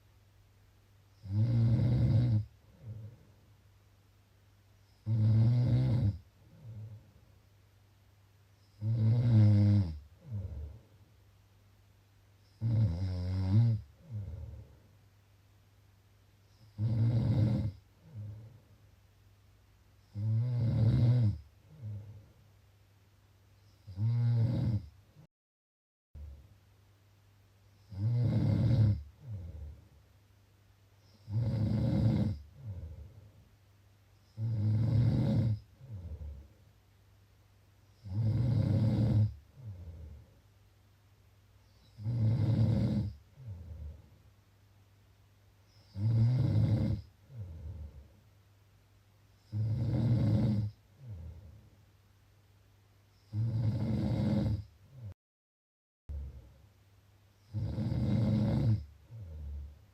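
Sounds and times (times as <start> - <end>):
loud rattling snores: 1.2 - 3.0, 5.0 - 6.8, 8.8 - 10.7, 12.6 - 14.6, 16.6 - 18.3, 20.1 - 22.1, 23.8 - 24.9, 27.9 - 29.6, 31.2 - 33.0, 34.4 - 36.4, 38.0 - 40.0, 41.9 - 44.0, 45.8 - 47.7, 49.5 - 51.3, 53.3 - 55.1, 57.5 - 59.6
soft breath sound: 2.5 - 3.7, 6.3 - 7.6, 13.9 - 15.1, 17.8 - 18.9, 32.4 - 34.5, 35.5 - 36.8, 39.3 - 40.7.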